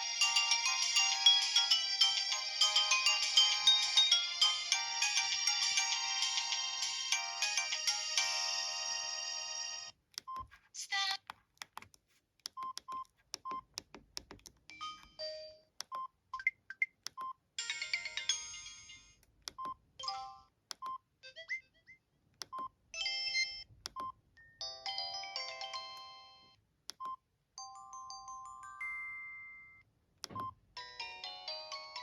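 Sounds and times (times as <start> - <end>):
polyphonic phone ringtones: 0.0 - 9.9, 17.6 - 19.1
phone key beeps and clicks: 10.1 - 10.5, 11.6 - 17.4, 19.4 - 21.0, 22.4 - 24.6, 26.9 - 27.2, 30.2 - 30.6.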